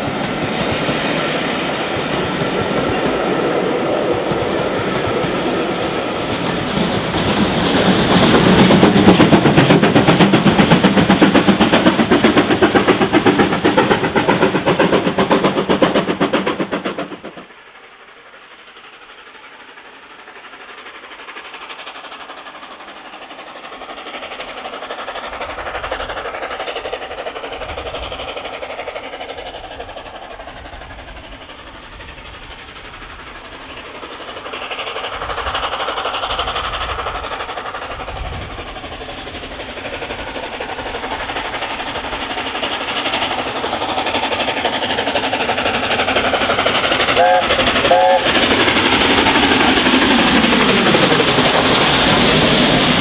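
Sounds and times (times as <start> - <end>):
steam locomotive passing: 0.0 - 53.0.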